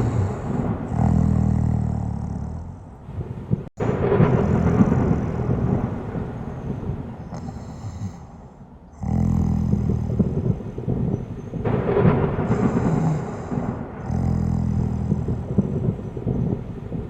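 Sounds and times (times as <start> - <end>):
person snoring: 0.0 - 3.0, 4.2 - 6.1, 7.2 - 10.8, 12.3 - 16.0.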